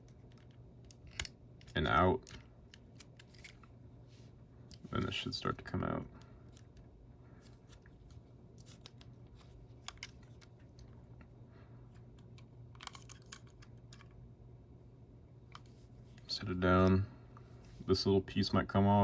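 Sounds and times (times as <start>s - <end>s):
clicks of camera parts handled: 0.0s - 3.7s, 7.7s - 11.0s, 12.0s - 14.2s.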